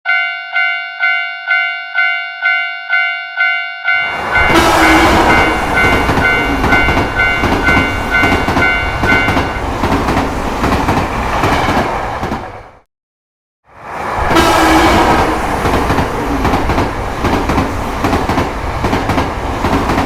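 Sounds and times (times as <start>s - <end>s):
railroad crossing bell dinging: 0.0s - 9.6s
train clickety-clack rumble: 4.2s - 12.8s, 14.1s - 20.0s.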